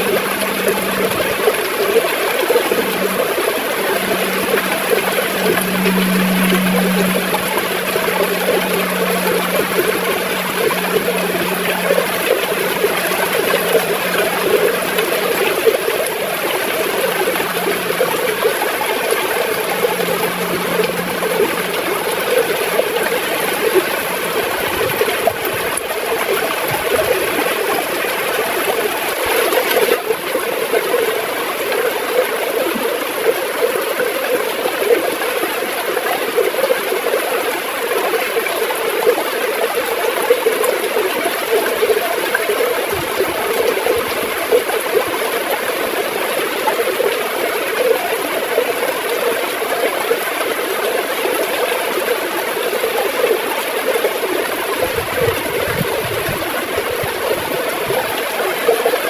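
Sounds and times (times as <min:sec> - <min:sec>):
river water gurgling: 0:00.0 - 0:59.0.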